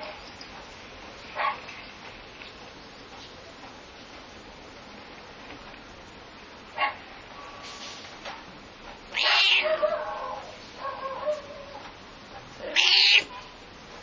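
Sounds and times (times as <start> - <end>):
dog barking: 1.4 - 1.6, 6.8 - 7.6, 9.2 - 11.8
cat meowing: 9.1 - 10.5, 12.6 - 13.5.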